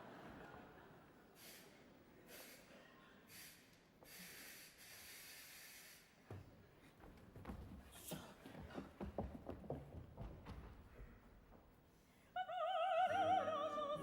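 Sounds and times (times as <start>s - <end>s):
airy hisses of breath: 1.4s - 6.2s.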